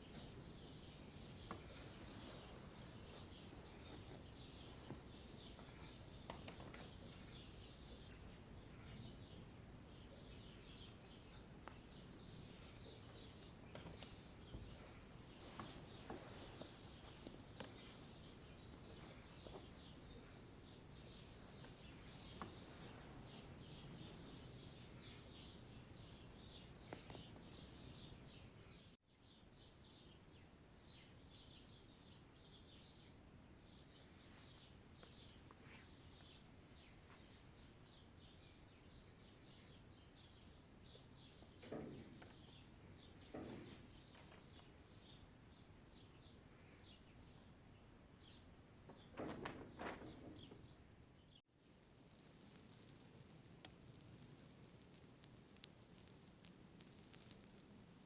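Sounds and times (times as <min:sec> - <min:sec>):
birds chirping: 0:00.0 - 0:28.9, 0:52.1 - 0:58.0
low background hiss: 0:00.0 - 0:35.0.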